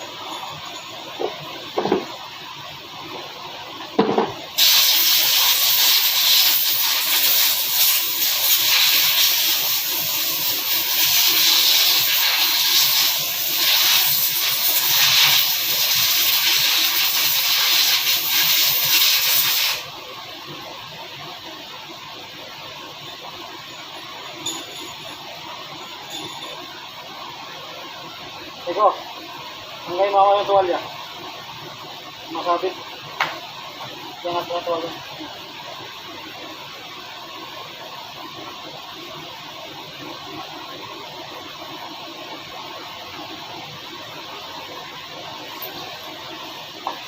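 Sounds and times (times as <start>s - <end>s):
pressurized jet hissing: 4.6s - 19.9s.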